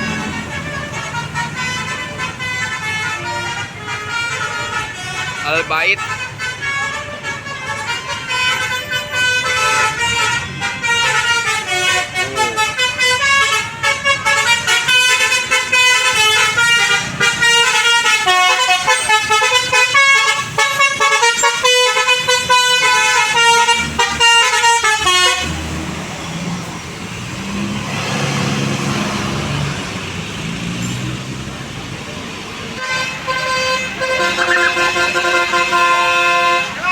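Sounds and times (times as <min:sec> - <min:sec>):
bus musical horn melody: 0:00.0 - 0:26.0, 0:32.8 - 0:36.9
low traffic rumble: 0:00.0 - 0:36.9.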